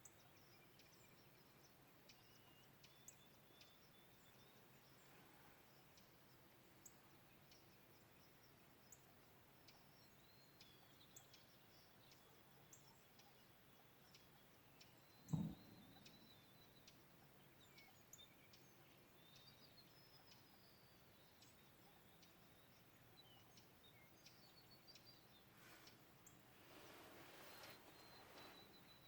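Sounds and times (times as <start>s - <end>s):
birds chirping and trilling: 9.7s - 29.0s
low thump: 15.2s - 16.2s.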